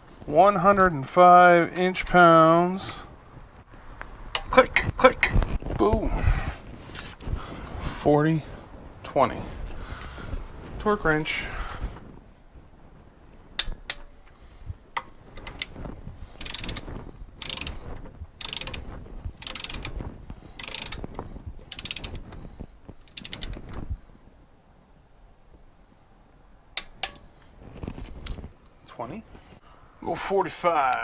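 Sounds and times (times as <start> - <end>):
sharp metal clicks: 4.0 - 5.6, 13.5 - 23.9, 26.8 - 27.5
torque wrench ratcheting: 15.0 - 22.4, 23.0 - 23.7.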